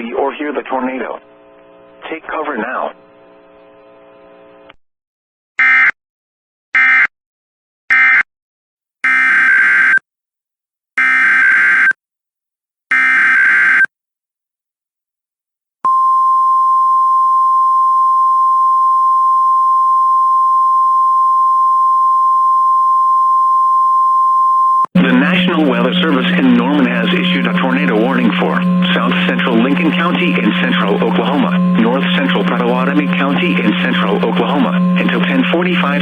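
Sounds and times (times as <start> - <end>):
digital data bursts: 25.0 - 36.0
steady warning alarm tone: 25.0 - 36.0.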